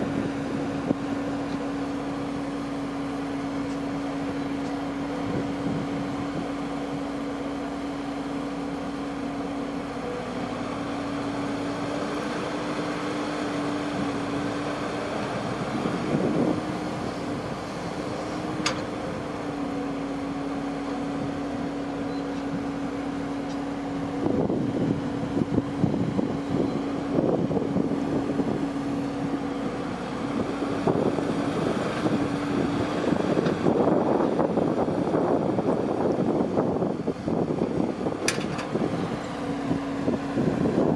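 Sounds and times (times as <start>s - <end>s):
harvester engine running: 0.0s - 40.9s.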